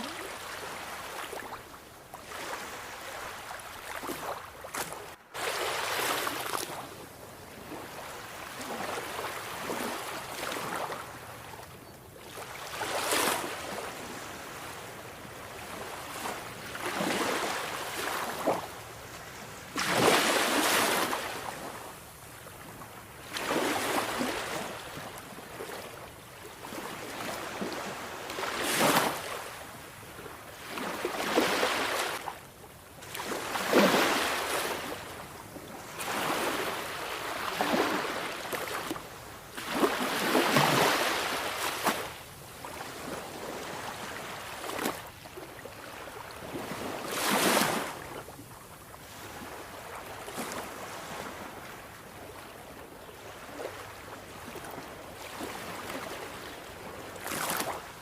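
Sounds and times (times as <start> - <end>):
sea waves breaking: 2.2 - 6.9, 15.6 - 21.8, 30.6 - 32.3, 33.1 - 35.1, 35.8 - 39.0, 39.6 - 45.0.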